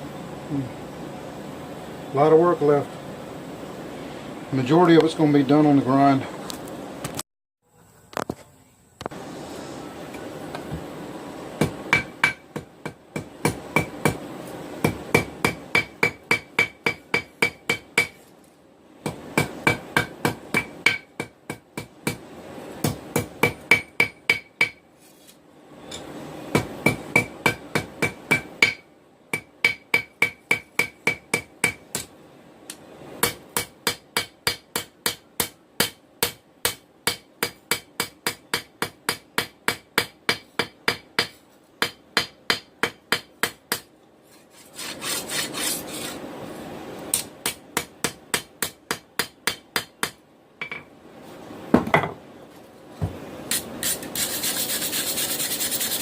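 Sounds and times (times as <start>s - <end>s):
hammer striking steel on anvil: 11.6s - 14.2s, 14.8s - 18.2s, 19.0s - 22.2s, 22.8s - 24.8s, 26.5s - 32.1s, 33.2s - 43.9s, 47.2s - 50.9s.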